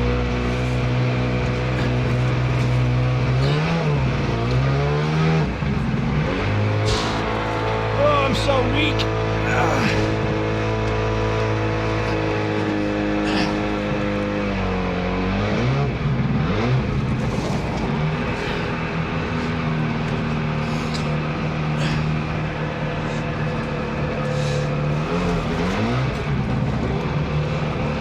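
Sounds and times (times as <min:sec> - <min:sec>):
boat motor humming: 0:00.0 - 0:28.0.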